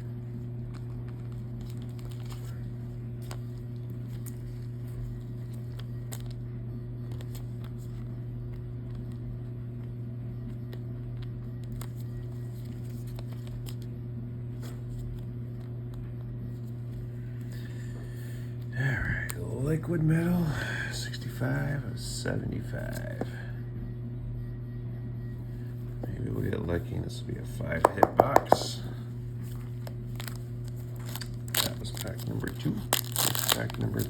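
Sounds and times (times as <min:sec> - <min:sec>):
steady low hum: 0:00.0 - 0:34.0
trading cards being handled: 0:00.3 - 0:06.4, 0:07.0 - 0:09.2, 0:10.4 - 0:13.9, 0:22.7 - 0:23.4, 0:25.5 - 0:34.0.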